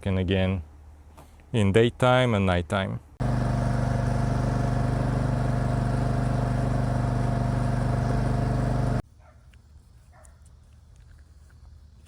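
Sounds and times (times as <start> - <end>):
mower engine running: 3.2 - 9.0.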